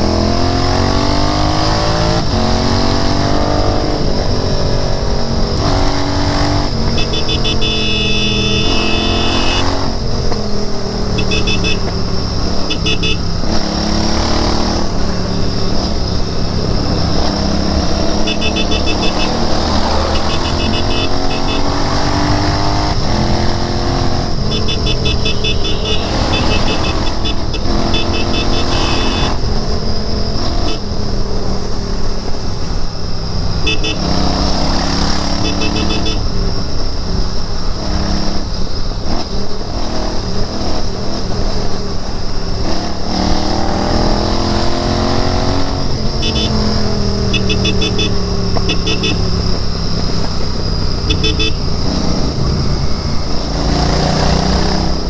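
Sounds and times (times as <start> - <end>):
motorcycle engine accelerating: 0.0 - 36.5, 37.8 - 55.0
short high-pitched beeps: 6.9 - 9.8, 11.2 - 12.0, 18.2 - 21.8, 24.5 - 29.3, 46.2 - 46.6, 47.3 - 49.3, 51.0 - 51.7.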